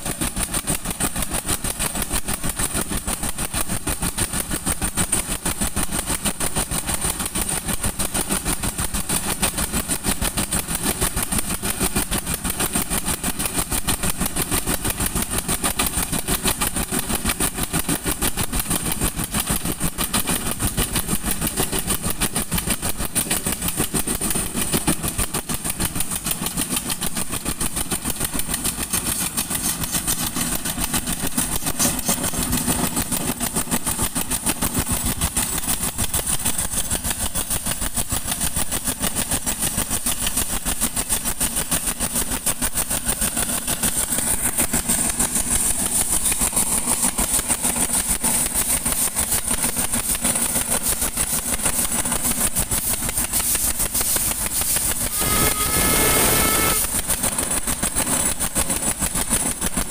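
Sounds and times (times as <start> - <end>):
construction machine engine running: 0.0 - 59.9.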